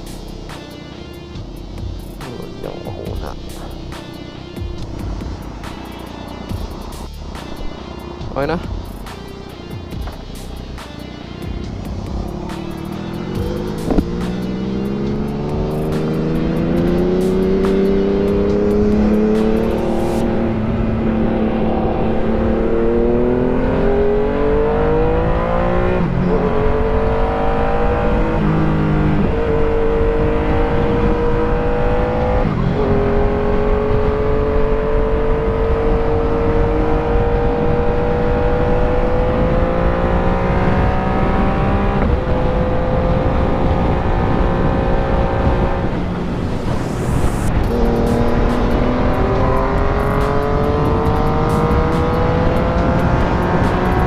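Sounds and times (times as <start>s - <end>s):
motorcycle engine shifting gears: 0.5s - 54.0s
wind noise: 25.8s - 54.0s.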